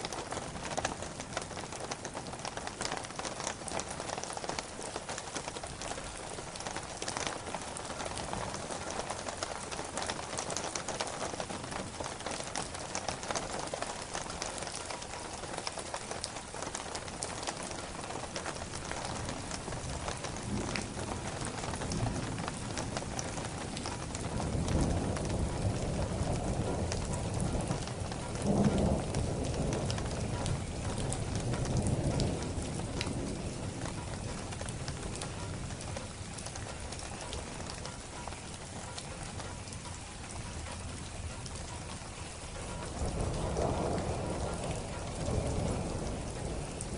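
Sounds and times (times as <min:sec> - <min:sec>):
heavy rain falling: 0:00.0 - 0:46.9
low rolling thunder: 0:16.9 - 0:38.6, 0:40.3 - 0:46.9.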